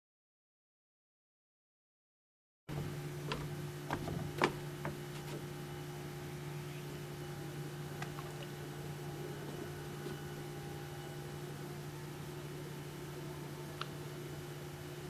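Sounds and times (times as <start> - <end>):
steady low hum: 2.7 - 15.0.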